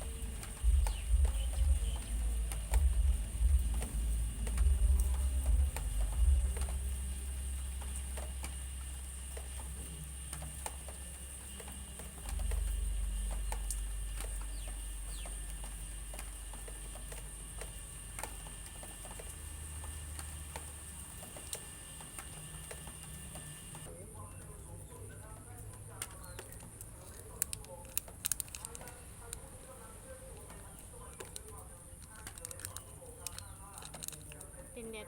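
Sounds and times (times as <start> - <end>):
wind rumbling on microphone: 0.0 - 20.9
thin high whine: 0.0 - 23.9
small clicks: 0.0 - 24.5, 25.1 - 34.8.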